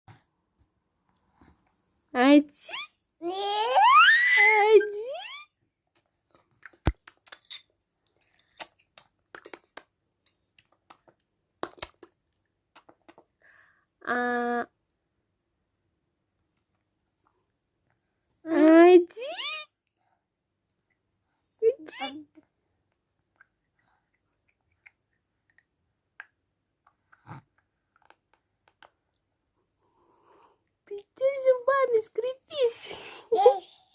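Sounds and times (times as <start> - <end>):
teeth grinding clicks and squeaks: 6.6 - 10.4.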